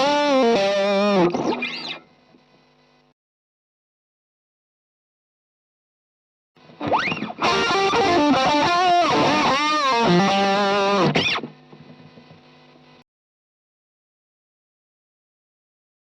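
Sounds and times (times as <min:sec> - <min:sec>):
distorted electric guitar lead: 0:00.0 - 0:02.1, 0:06.6 - 0:12.3.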